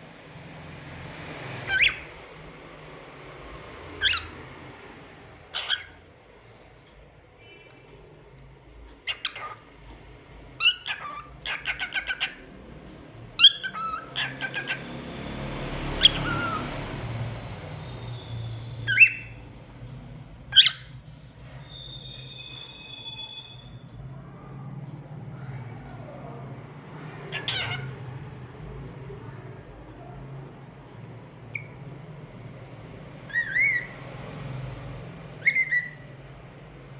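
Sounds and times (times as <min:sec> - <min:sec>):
cockatiel chirping and whistling: 0:01.6 - 0:02.1, 0:04.0 - 0:04.4, 0:05.5 - 0:06.0, 0:09.0 - 0:09.6, 0:10.6 - 0:12.4, 0:13.4 - 0:14.8, 0:16.0 - 0:16.6, 0:18.8 - 0:19.4, 0:20.5 - 0:20.9, 0:21.6 - 0:23.8, 0:27.3 - 0:27.9, 0:31.5 - 0:31.8, 0:33.3 - 0:34.0, 0:35.4 - 0:36.1.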